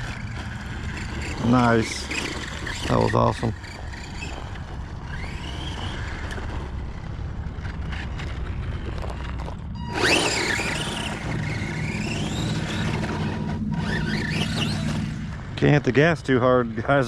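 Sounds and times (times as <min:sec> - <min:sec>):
electric motor whining: 0:00.0 - 0:17.0
low rumble: 0:03.5 - 0:17.0.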